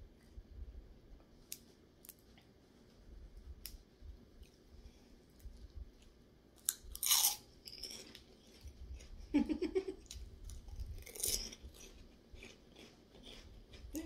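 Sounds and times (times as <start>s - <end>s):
crunching and chewing: 5.3s - 9.3s, 10.0s - 14.0s.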